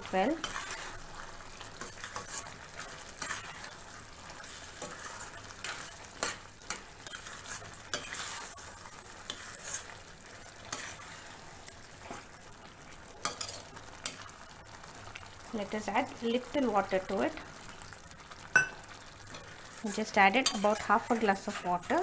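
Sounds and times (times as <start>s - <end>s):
utensil scraping a pan: 0.0s - 12.3s, 19.3s - 22.0s
food sizzling: 0.0s - 22.0s.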